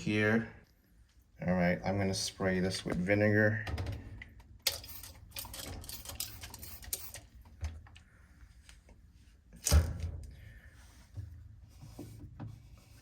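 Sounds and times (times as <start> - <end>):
spray bottle spritzing: 4.6 - 7.3.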